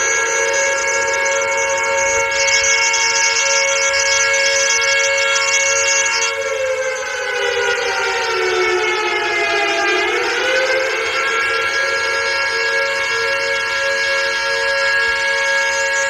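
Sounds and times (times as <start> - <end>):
air raid siren wailing: 0.0 - 16.0.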